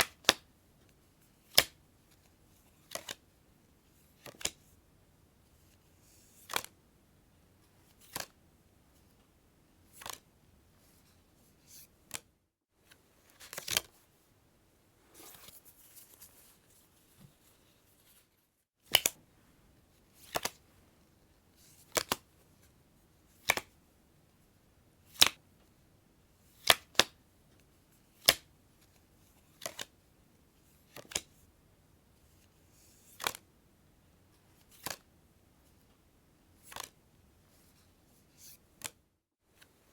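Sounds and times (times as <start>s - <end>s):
soft sliding rustle: 15.0s - 18.5s
playing cards snapping: 18.9s - 19.2s, 20.2s - 20.6s, 21.9s - 22.2s, 23.4s - 23.7s, 25.2s - 25.4s, 26.6s - 27.1s, 28.2s - 28.5s.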